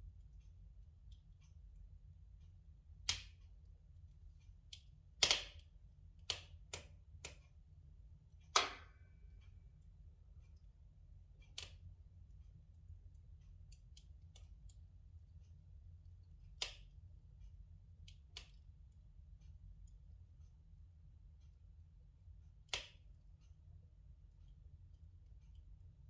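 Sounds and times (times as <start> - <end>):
low steady hum: 0.0 - 26.0
logs crackling and popping in fire: 5.2 - 5.6.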